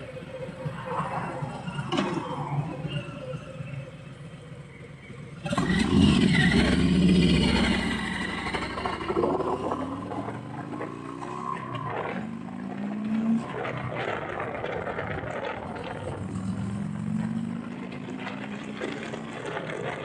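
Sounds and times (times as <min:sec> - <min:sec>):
motorcycle engine revving: 0:04.2 - 0:20.0.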